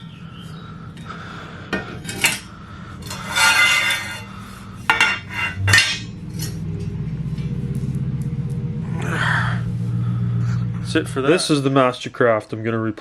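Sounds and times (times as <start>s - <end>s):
metal rail parts clanking: 1.8s - 7.0s.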